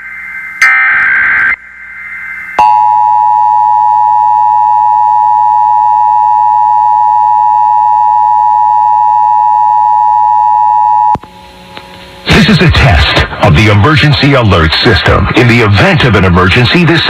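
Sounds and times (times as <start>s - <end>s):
warbling data tones: 0.0s - 5.6s.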